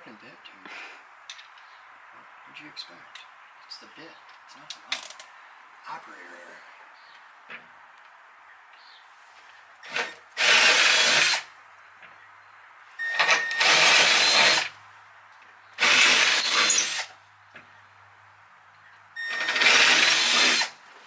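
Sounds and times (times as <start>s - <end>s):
power drill running: 9.8s - 11.5s, 13.0s - 14.7s, 15.8s - 17.1s, 19.2s - 20.8s.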